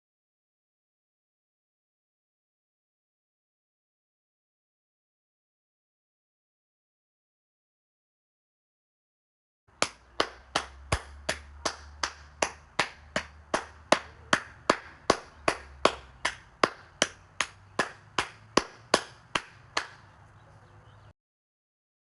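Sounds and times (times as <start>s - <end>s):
sharp slaps: 9.8s - 20.1s.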